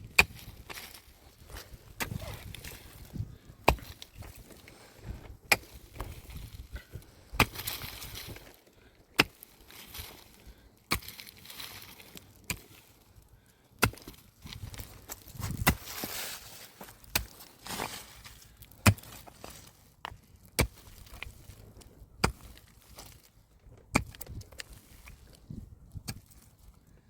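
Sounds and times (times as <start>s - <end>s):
heavy tool chopping strikes: 3.7s - 4.0s, 13.8s - 14.2s, 15.4s - 16.0s, 18.8s - 19.2s.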